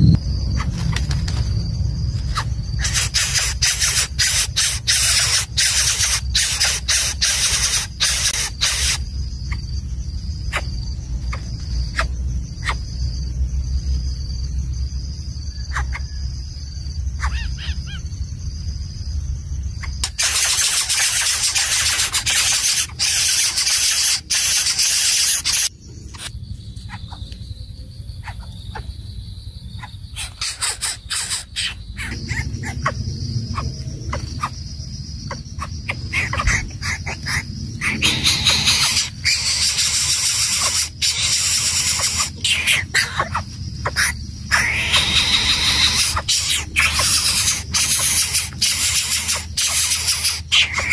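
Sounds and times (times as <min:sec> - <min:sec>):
low hum: 0:00.0 - 0:04.9, 0:31.9 - 0:49.6
insects chirping: 0:00.0 - 0:50.9
bird nestling squealing hisses: 0:02.3 - 0:09.0, 0:20.0 - 0:25.7, 0:36.1 - 0:43.4, 0:44.5 - 0:50.9.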